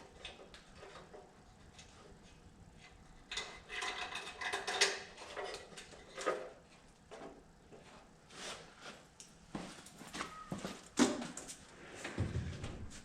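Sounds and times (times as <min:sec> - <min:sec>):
parts rattling and knocking: 0:03.3 - 0:07.4.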